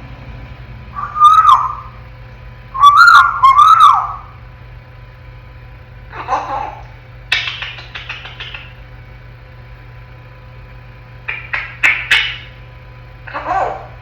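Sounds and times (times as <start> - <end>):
parrot clicking and rattling: 7.3 - 8.8, 11.3 - 12.4.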